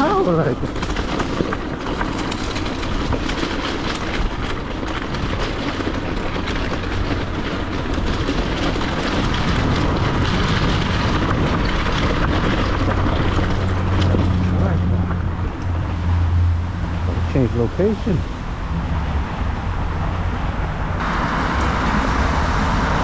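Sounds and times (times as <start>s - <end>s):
small knocks and rattles: 0.0s - 17.8s
wind and tyre noise: 0.0s - 23.0s.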